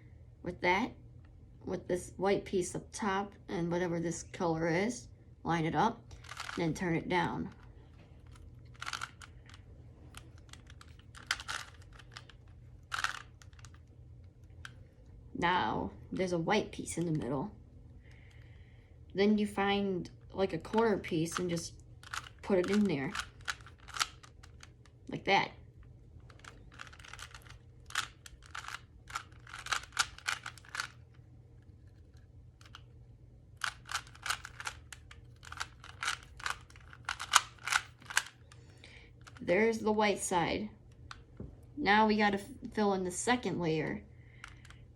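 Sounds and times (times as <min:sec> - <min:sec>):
puzzle cube plastic clicking: 0:06.1 - 0:06.6, 0:07.5 - 0:14.8, 0:20.6 - 0:25.1, 0:25.8 - 0:33.0, 0:33.6 - 0:39.5, 0:44.4 - 0:44.8
rasping cube turns: 0:06.2 - 0:06.6, 0:08.2 - 0:13.9, 0:21.3 - 0:24.9, 0:26.2 - 0:32.9, 0:33.6 - 0:39.4.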